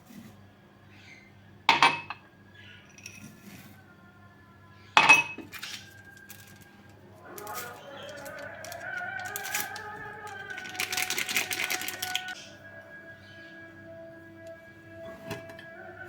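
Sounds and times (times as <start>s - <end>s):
dishes clattering: 1.7s - 2.2s, 5.0s - 5.9s
dishware clinking: 1.7s - 2.2s, 5.0s - 5.9s.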